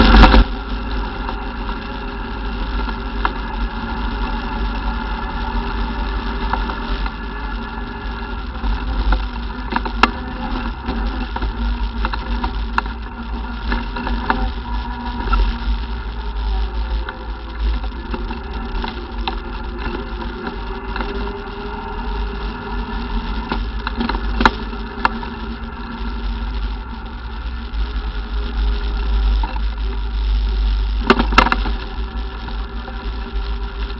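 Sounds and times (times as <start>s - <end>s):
atv engine running: 0.0s - 33.9s.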